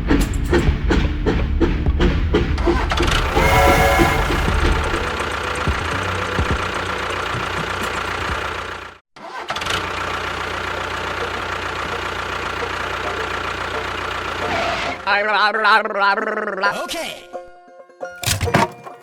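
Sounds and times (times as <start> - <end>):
vehicle engine running: 0.0 - 9.0, 9.6 - 15.0.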